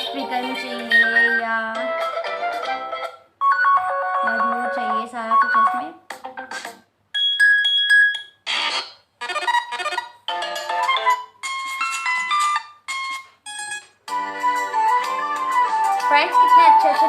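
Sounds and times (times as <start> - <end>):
phone ringtone snippets: 3.4 - 5.9.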